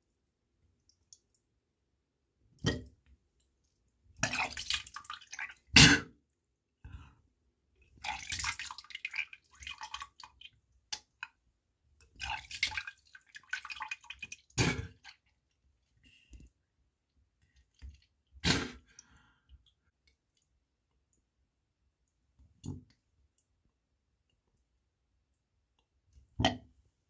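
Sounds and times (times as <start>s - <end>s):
liquid splashing and dripping: 4.2s - 5.7s, 8.0s - 11.3s, 12.1s - 15.3s
person vomiting and spitting: 5.8s - 6.1s, 14.6s - 15.0s, 18.4s - 18.9s.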